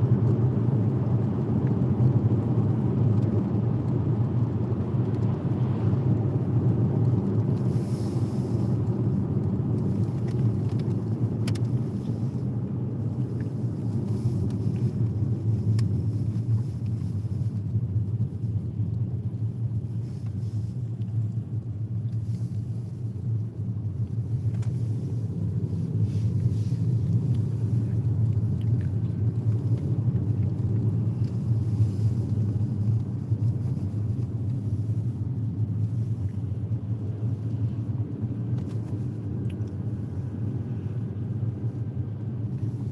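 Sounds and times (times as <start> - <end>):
car road and tyre rumble: 0.0 - 42.9.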